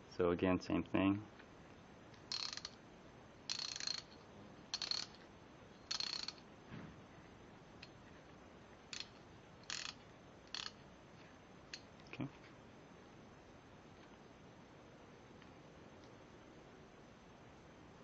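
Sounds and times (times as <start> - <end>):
socket ratchet clicking: 2.2 - 2.8, 3.5 - 5.2, 5.9 - 6.4, 8.9 - 10.8.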